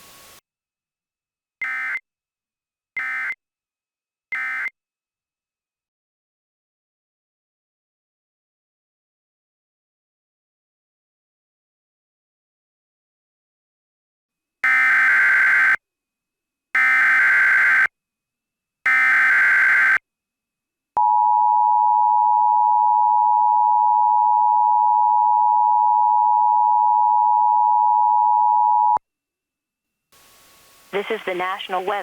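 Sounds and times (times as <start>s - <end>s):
buzzy digital data bursts: 14.7s - 15.8s.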